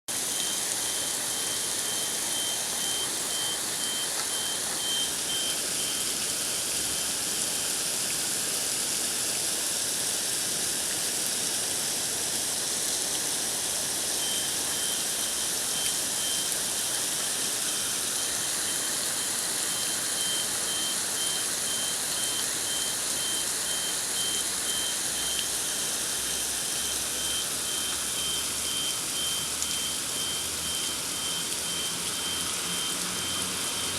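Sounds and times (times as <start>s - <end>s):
steady rain hiss: 0.1s - 33.9s
high-pitched beeping: 0.2s - 7.1s, 14.2s - 33.9s.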